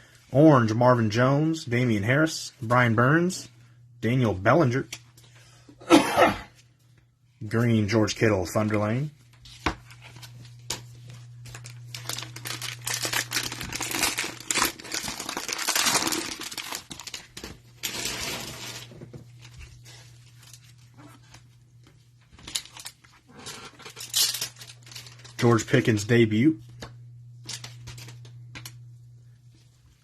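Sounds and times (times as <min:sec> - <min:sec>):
low electrical hum: 0:00.0 - 0:30.0
plastic wrapping tearing and crinkling: 0:09.9 - 0:21.4, 0:22.3 - 0:25.7.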